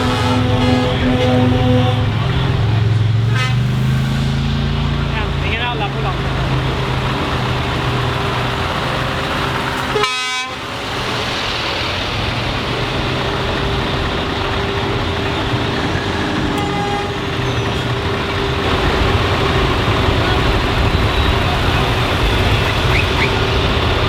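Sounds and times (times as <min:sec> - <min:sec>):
truck air horns: 0:00.0 - 0:04.5, 0:09.6 - 0:11.2, 0:15.1 - 0:24.0
truck engines running: 0:00.0 - 0:24.0.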